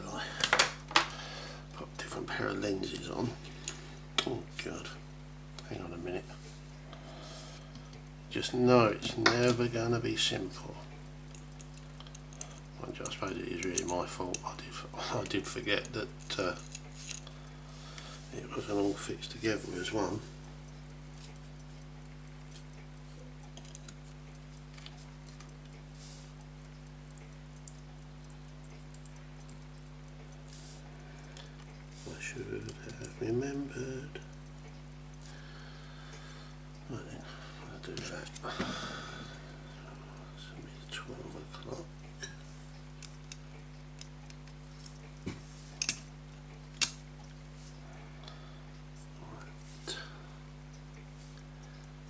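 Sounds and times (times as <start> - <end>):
low electrical hum: 0.0 - 52.0
metal tool clicks on watch parts: 45.8 - 46.1, 46.8 - 47.0.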